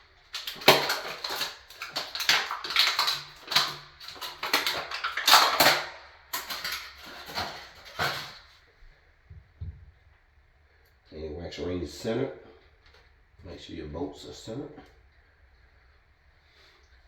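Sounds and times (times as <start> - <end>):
wrapping crinkling and rustling: 0.0 - 8.7.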